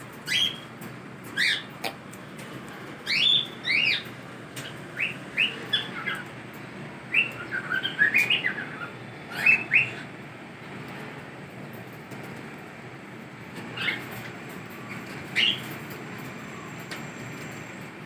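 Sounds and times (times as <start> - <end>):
cockatiels chirping and whistling: 0.2 - 0.6, 1.3 - 2.0, 3.0 - 4.1, 5.0 - 6.3, 7.1 - 10.0, 15.3 - 15.8.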